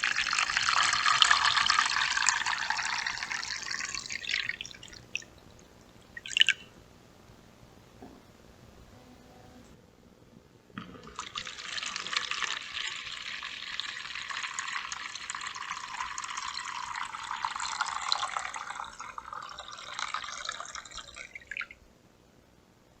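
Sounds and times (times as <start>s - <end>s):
water pouring into a bowl: 0.0s - 6.6s, 10.8s - 21.8s.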